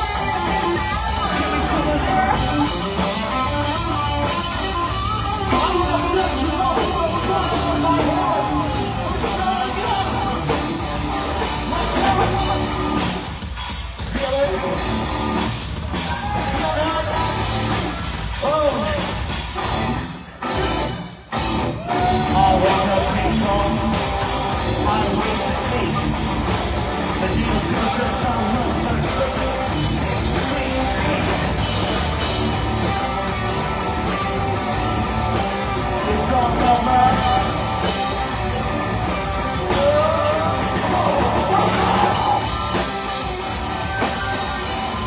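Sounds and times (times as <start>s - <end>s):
person singing and yelling: 0.0s - 13.2s, 14.0s - 19.2s, 21.7s - 45.0s
live rock band playing: 0.0s - 45.0s.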